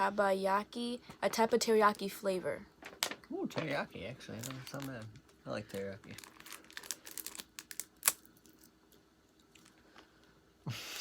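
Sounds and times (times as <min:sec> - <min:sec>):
plastic snack packet crinkling: 0:04.3 - 0:08.8.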